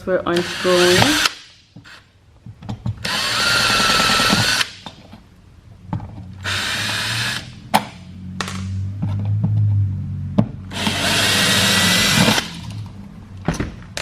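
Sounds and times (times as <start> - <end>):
power drill motor whine: 3.0 - 4.7, 6.4 - 7.5, 10.7 - 12.7.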